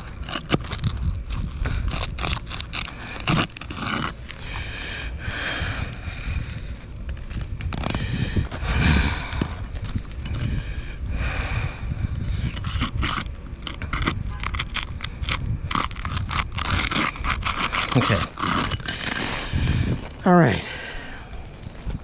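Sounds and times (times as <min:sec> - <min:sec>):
tool scraping roof shingles: 0:00.0 - 0:04.8, 0:06.6 - 0:08.6, 0:12.4 - 0:20.2.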